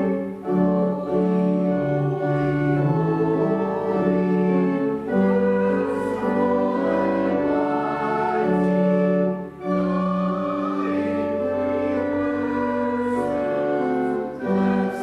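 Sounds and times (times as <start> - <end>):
organ playing slow chords: 0.0 - 15.0.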